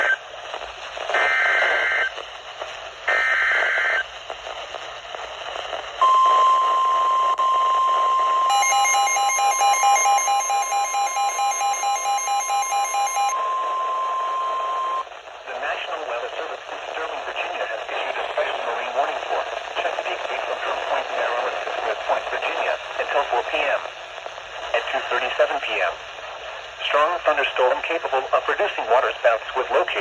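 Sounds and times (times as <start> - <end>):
pulsing alarm beep: 6.0 - 15.0
steady warning alarm tone: 6.0 - 15.0.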